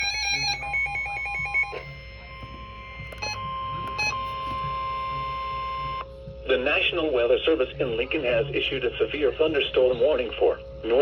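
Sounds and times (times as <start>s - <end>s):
warbling data tones: 0.0s - 6.0s
steady attention tone: 0.0s - 6.9s.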